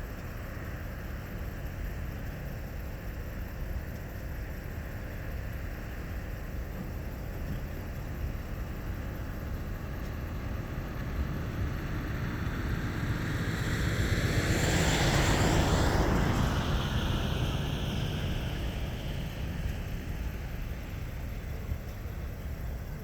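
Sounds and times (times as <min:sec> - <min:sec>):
light aircraft taking off: 0:05.8 - 0:23.0.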